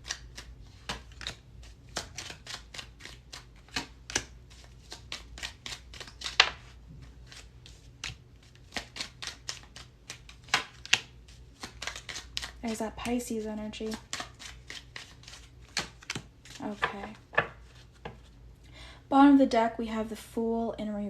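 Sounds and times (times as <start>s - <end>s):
cards being shuffled: 0.0s - 18.4s.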